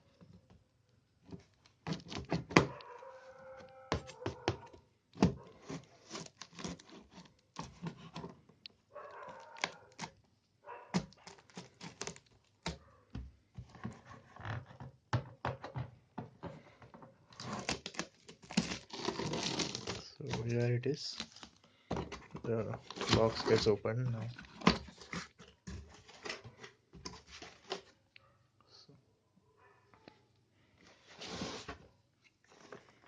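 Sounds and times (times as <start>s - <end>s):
knife cutting tape and cardboard: 5.2s - 8.3s, 11.0s - 12.7s, 17.4s - 20.4s.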